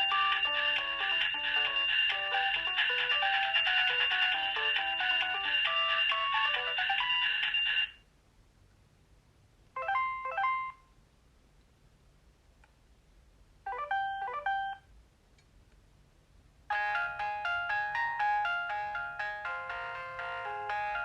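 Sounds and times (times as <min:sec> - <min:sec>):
phone ringtone melody: 0:00.0 - 0:08.0, 0:09.8 - 0:10.8, 0:13.7 - 0:14.8, 0:16.7 - 0:21.0.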